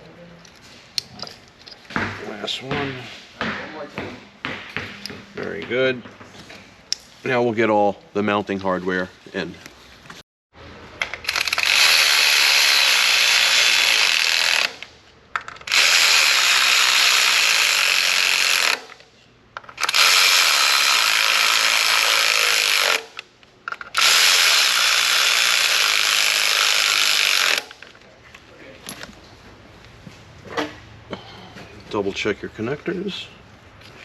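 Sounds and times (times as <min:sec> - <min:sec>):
cordless power tool driving bolts: 0:11.1 - 0:19.0, 0:19.7 - 0:27.8.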